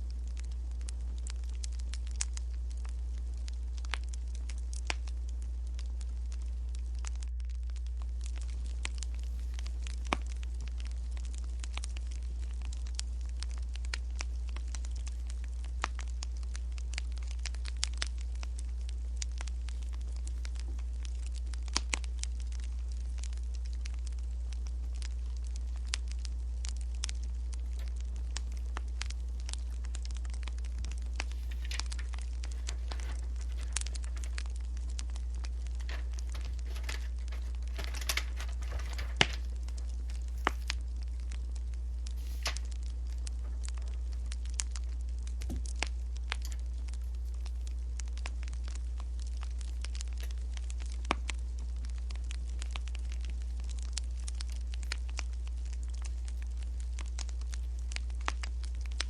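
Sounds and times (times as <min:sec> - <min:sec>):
low hum: 0:00.0 - 0:59.0
wood fire crackling and popping: 0:00.0 - 0:59.0
dense rustle: 0:30.9 - 0:34.6, 0:35.2 - 0:40.8, 0:42.1 - 0:43.8.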